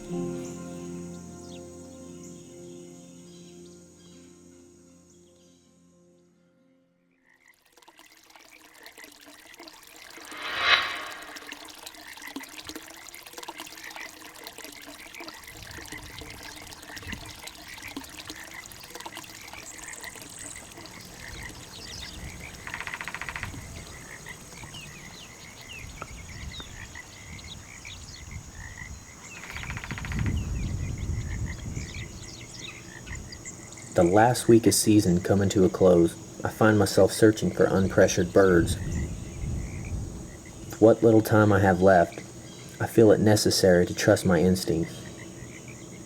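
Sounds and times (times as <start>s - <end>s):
frogs chirping: 7.1s - 7.7s, 14.7s - 43.4s, 44.0s - 46.0s.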